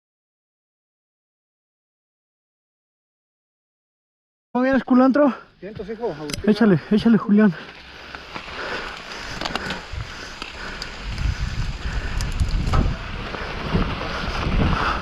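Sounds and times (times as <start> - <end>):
bike rolling on sandy trail: 5.2 - 15.0
bike clicks and rattles: 7.6 - 15.0
wind buffeting microphone: 8.8 - 15.0.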